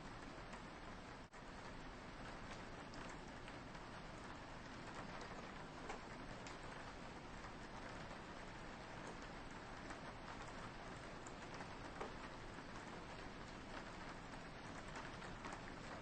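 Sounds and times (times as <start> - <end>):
rain pattering on a window: 0.0 - 16.0.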